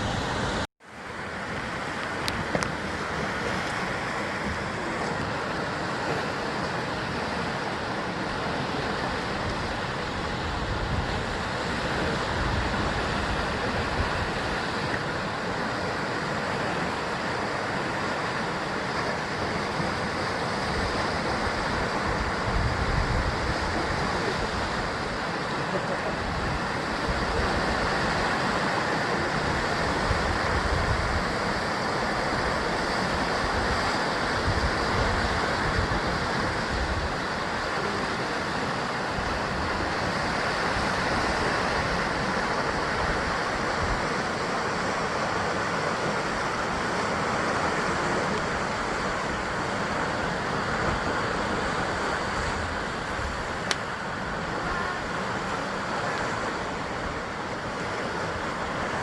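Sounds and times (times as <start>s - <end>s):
sea surf against rocks: 0.0s - 59.0s.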